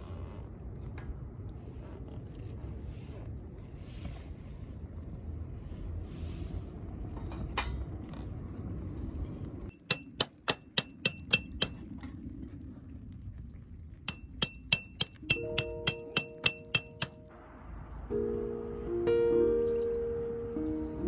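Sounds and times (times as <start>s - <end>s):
sharp metallic clinks: 14.1s - 17.3s
soft background music: 15.3s - 21.0s.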